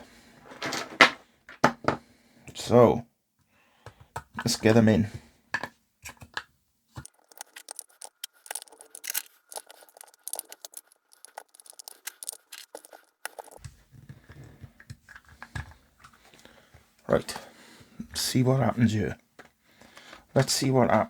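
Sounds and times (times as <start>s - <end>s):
batteries clicking into holder: 7.0s - 13.7s.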